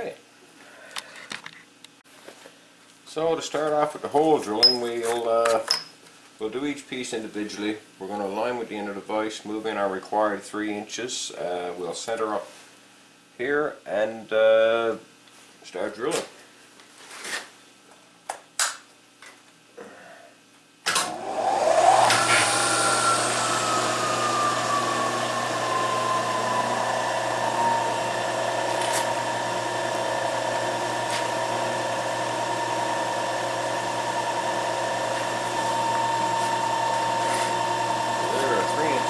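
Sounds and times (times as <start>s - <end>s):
milling machine spindle whine: 21.1s - 39.0s.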